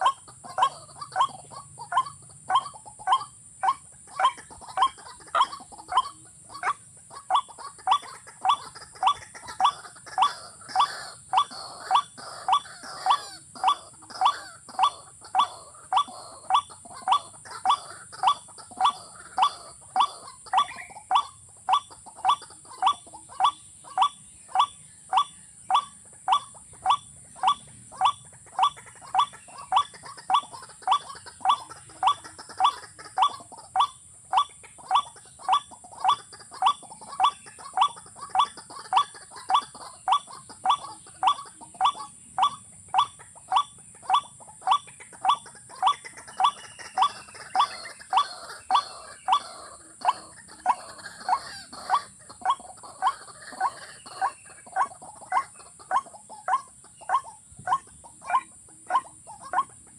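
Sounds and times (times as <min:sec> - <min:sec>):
bird calling: 0:00.0 - 0:59.9.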